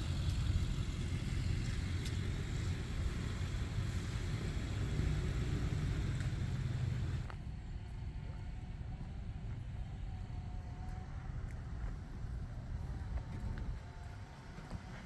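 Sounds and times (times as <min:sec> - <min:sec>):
tornado roar: 0:00.0 - 0:07.3.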